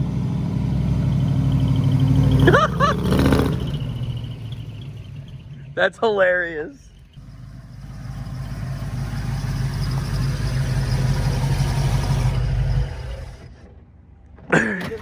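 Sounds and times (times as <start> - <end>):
truck engine driving past: 0.0 - 15.0.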